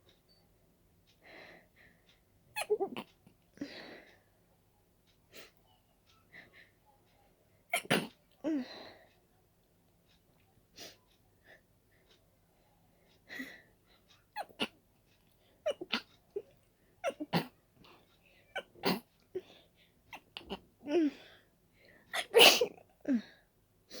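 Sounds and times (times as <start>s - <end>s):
person sneezing: 22.1s - 22.8s.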